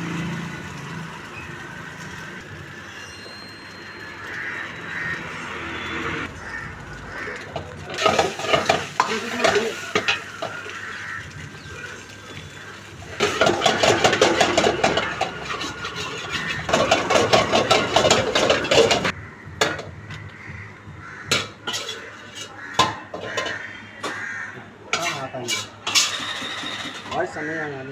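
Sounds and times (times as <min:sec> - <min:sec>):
utensil scraping metal pan: 0:07.1 - 0:19.8, 0:21.2 - 0:24.3, 0:24.9 - 0:27.4.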